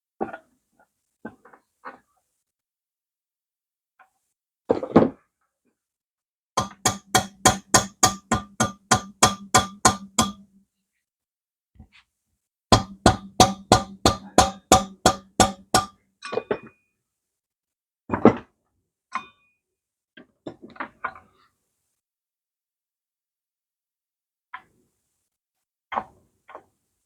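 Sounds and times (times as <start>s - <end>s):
hammer striking metal: 6.6s - 10.5s, 12.7s - 16.0s.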